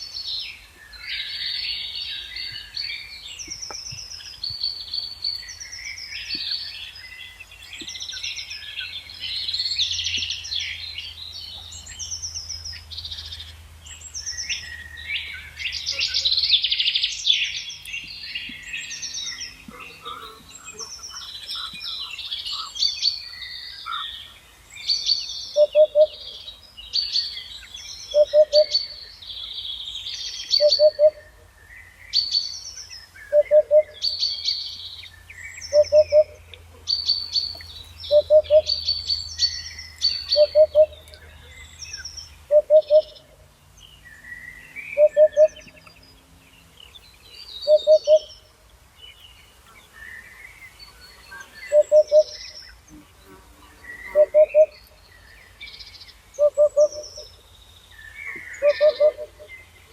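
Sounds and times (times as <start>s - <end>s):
songbirds singing and chirping: 0.0s - 59.9s.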